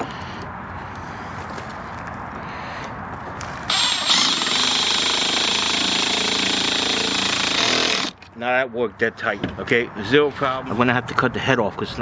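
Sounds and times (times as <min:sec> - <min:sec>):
power drill running: 0:03.7 - 0:08.2.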